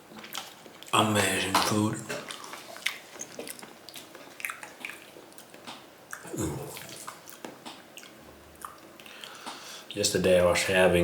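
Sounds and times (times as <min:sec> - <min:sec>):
person chewing: 0:00.0 - 0:09.8
mouth clicks and smacks: 0:00.2 - 0:09.6.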